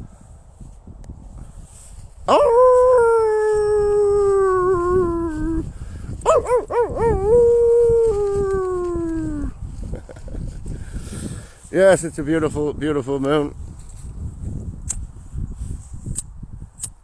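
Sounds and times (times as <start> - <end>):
long drawn-out howling: 2.3 - 9.6.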